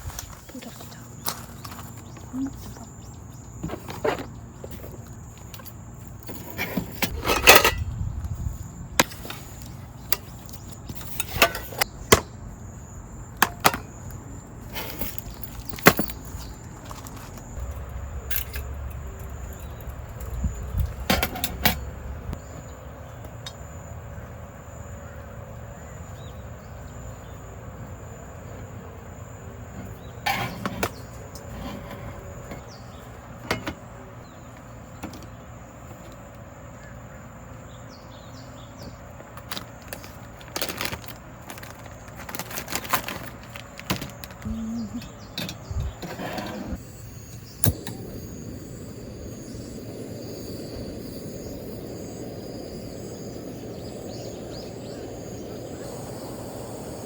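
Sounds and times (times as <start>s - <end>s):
objects being handled: 39.4s - 44.5s
thin high tone: 46.8s - 57.0s.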